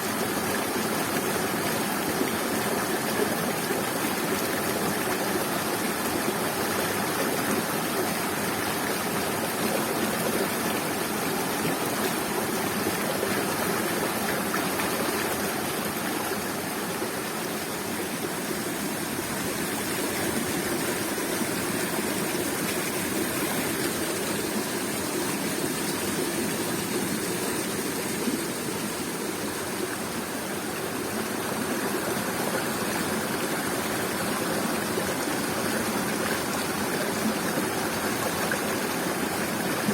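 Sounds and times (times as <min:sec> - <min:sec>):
waterfall roaring: 0:00.1 - 0:39.9.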